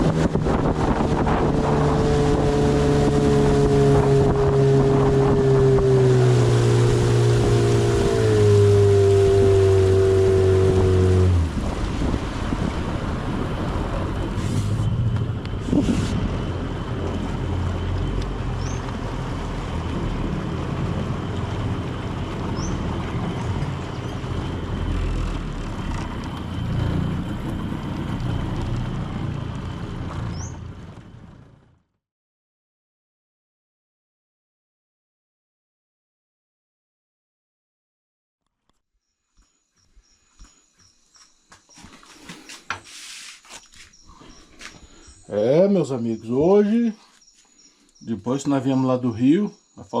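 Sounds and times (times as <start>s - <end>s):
water rushing: 0.0s - 31.1s
low rumble: 0.0s - 31.8s
boat motor running: 0.0s - 31.9s
wind: 0.0s - 31.9s, 38.6s - 50.0s.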